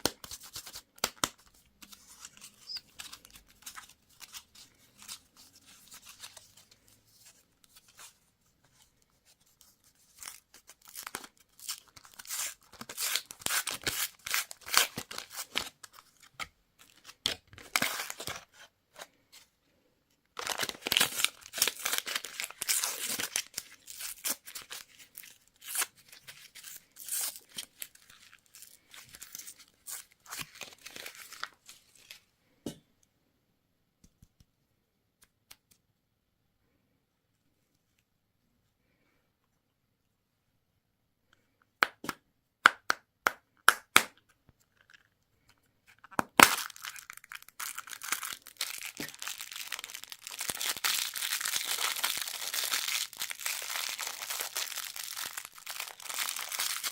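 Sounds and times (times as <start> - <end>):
candy wrappers crinkling: 20.4 - 32.2, 44.6 - 56.9.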